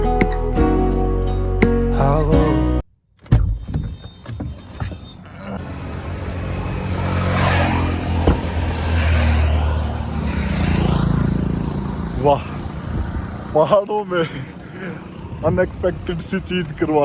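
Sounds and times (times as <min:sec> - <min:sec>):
car engine and road noise: 0:03.1 - 0:17.0
knocks: 0:03.2 - 0:05.2, 0:08.2 - 0:08.6.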